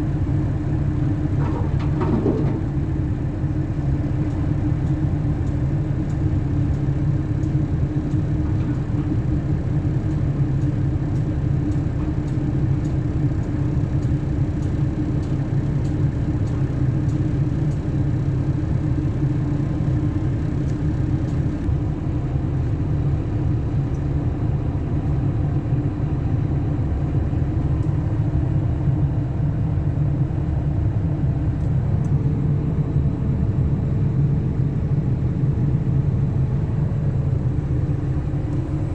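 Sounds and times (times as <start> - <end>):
excavator diesel engine droning: 0.0 - 38.9.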